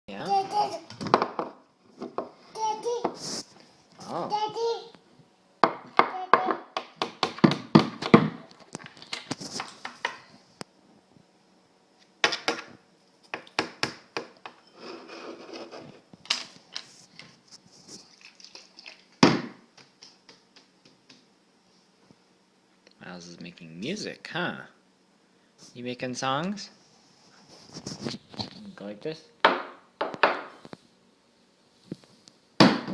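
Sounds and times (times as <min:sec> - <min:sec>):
child banging objects on table: 0:05.6 - 0:08.4, 0:12.2 - 0:12.7.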